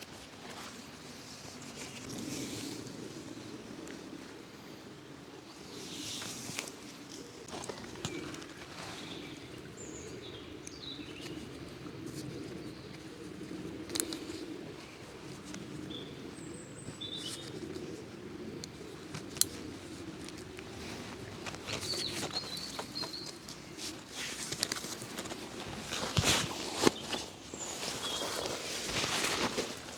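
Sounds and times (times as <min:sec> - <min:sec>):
wild birds chirping: 0:07.6 - 0:19.7, 0:20.5 - 0:23.5.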